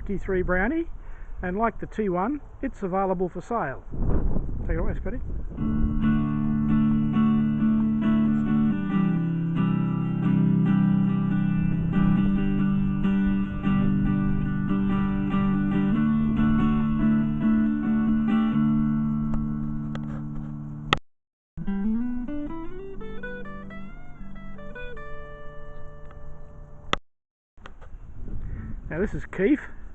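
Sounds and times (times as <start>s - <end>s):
electric guitar strumming chords: 5.6s - 21.0s, 21.6s - 27.0s.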